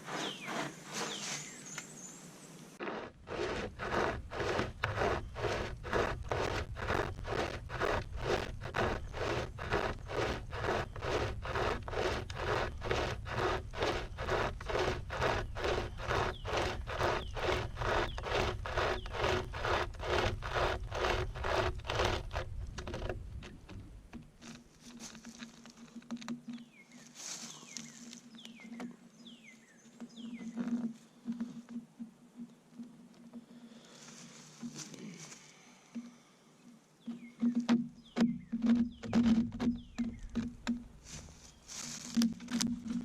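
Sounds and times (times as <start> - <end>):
chain saw sawing through log: 0.0 - 1.6, 2.8 - 23.2, 27.0 - 29.4, 38.6 - 43.0
faint scrapes and clicks: 2.8 - 43.0.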